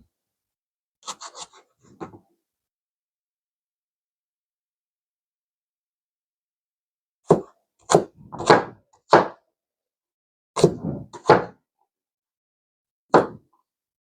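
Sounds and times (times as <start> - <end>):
knife chopping on cutting board: 7.3 - 9.4, 10.6 - 11.6, 13.1 - 13.4.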